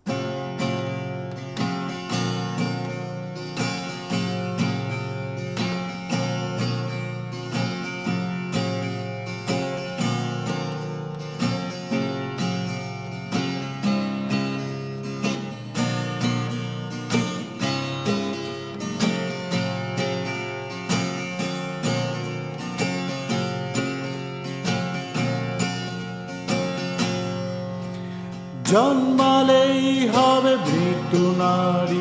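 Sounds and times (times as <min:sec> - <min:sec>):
acoustic guitar strumming: 0:00.0 - 0:32.0.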